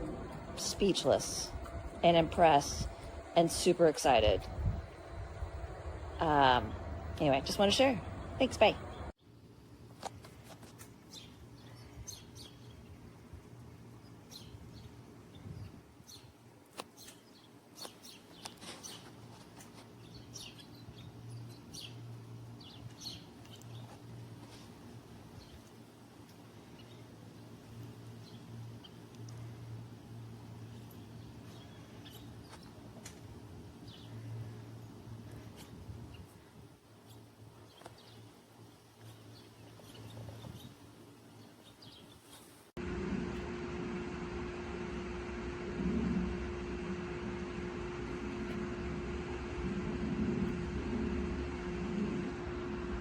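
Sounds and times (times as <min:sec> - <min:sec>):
loud mechanical hum with tone: 0:00.0 - 0:10.6, 0:11.2 - 0:41.9, 0:42.8 - 0:53.0
steady low hum: 0:00.0 - 0:16.6, 0:17.4 - 0:53.0
small birds chirping: 0:11.1 - 0:13.0, 0:14.0 - 0:24.7, 0:30.6 - 0:42.6.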